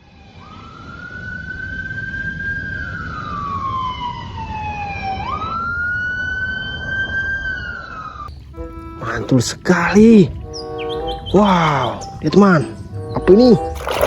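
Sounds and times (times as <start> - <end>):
police siren wailing: 0.0 - 13.8
steady low rumble: 8.2 - 13.8.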